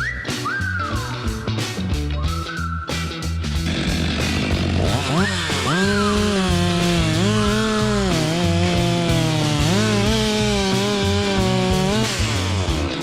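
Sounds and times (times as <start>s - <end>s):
background music: 0.0s - 13.0s
chainsaw revving: 3.6s - 13.0s.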